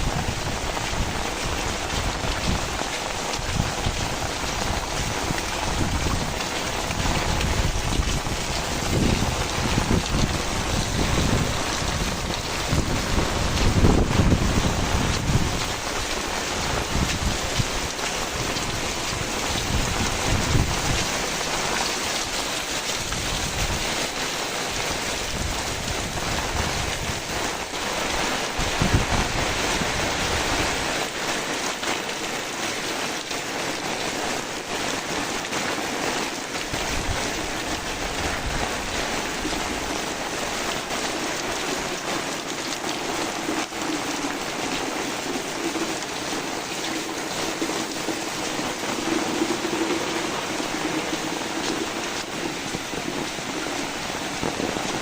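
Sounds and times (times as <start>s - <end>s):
wind buffeting microphone: 0.0s - 31.3s, 36.6s - 55.0s
heavy rain falling: 0.0s - 55.0s.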